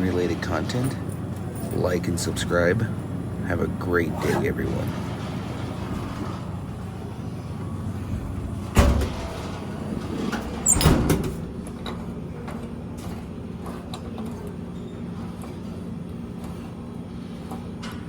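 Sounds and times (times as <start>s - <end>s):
steady low hum: 0.0s - 18.0s
heavy thump of door: 8.7s - 9.5s, 10.6s - 11.6s.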